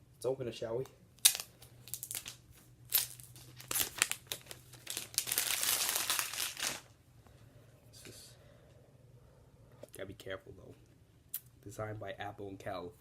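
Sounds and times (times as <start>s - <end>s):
plastic shrink-wrap crinkling: 1.2s - 6.9s
plastic wrap ripping: 1.2s - 6.9s.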